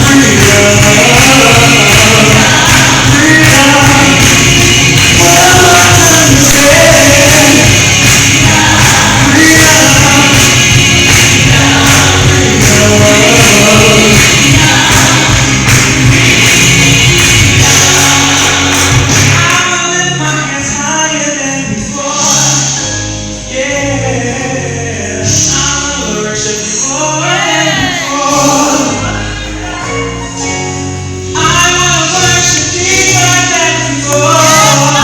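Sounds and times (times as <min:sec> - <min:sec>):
band playing with steady beat: 0:00.0 - 0:27.1
choir singing gospel: 0:00.0 - 0:35.0.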